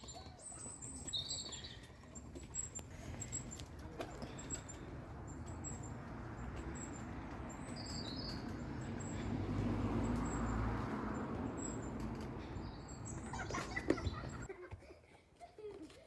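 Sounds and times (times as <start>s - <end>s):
high bird chirps: 4.3s - 14.5s.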